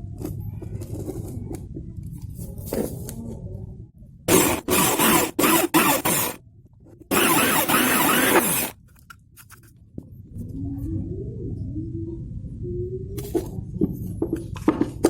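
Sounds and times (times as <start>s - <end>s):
rough scraping strokes: 7.1s - 8.8s.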